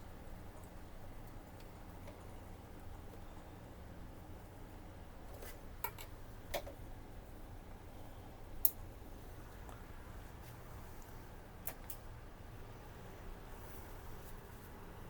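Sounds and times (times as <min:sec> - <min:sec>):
low steady hum: 0:00.0 - 0:15.0
plastic parts clicking and tapping: 0:05.8 - 0:06.8.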